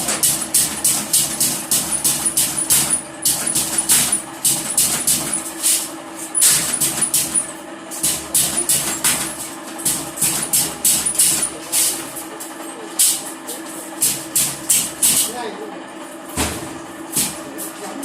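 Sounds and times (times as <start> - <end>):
spot welder bursts: 0.0 - 12.1
steady hum: 0.0 - 18.0.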